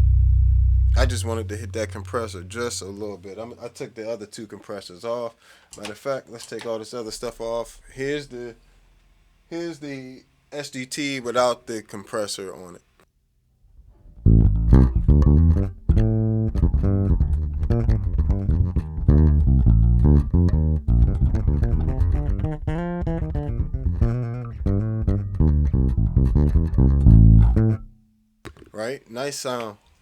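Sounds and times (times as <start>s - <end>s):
electric bass guitar plucked notes: 0.0s - 3.1s, 13.8s - 28.0s.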